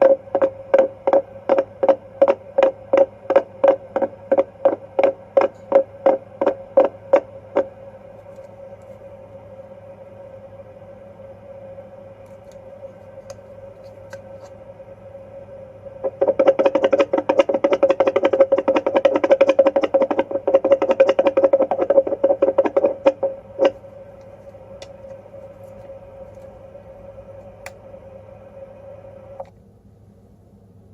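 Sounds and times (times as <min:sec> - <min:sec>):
doppler monitor electronic hum: 0:00.0 - 0:30.9
rapid pulsing crackle: 0:16.0 - 0:23.8.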